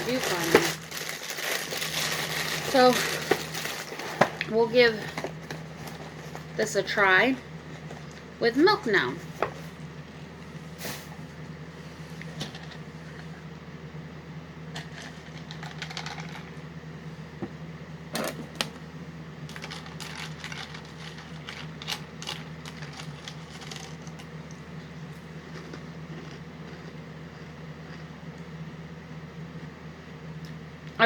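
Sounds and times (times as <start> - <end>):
cereal crunching: 0.0 - 6.5, 14.7 - 16.6, 19.5 - 28.1
steady low hum: 0.0 - 31.0.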